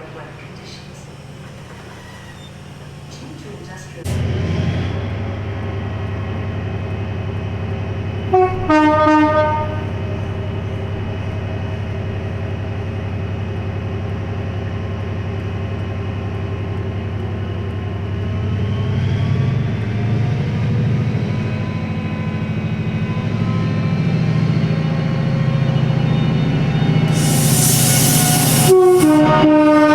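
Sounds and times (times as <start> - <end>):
diesel locomotive engine running: 0.0 - 29.9
two-tone train horn blast: 8.3 - 10.2, 27.1 - 29.9.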